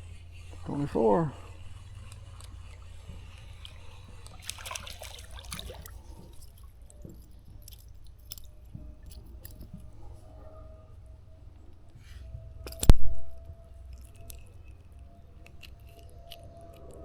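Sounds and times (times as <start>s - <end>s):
water dripping: 1.9s - 9.8s
wet handling noises: 2.1s - 10.2s.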